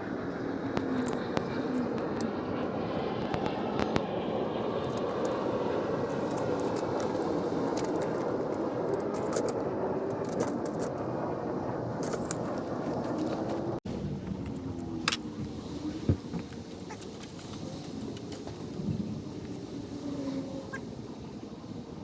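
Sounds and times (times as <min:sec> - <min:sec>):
engine drone: 0:00.0 - 0:22.0.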